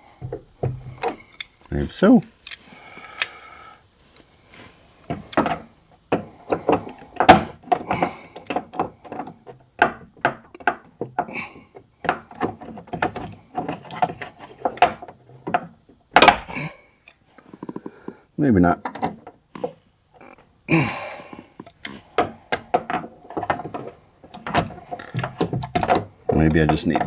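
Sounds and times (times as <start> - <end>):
pliers clicking and knocking on metal: 0.2 - 3.4, 21.6 - 27.0.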